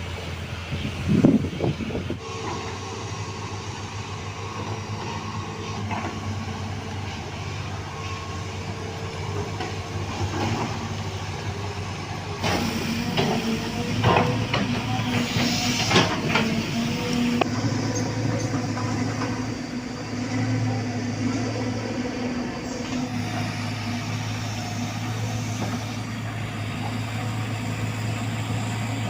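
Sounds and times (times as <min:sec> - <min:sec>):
heavy machinery diesel engines: 0:00.0 - 0:29.0.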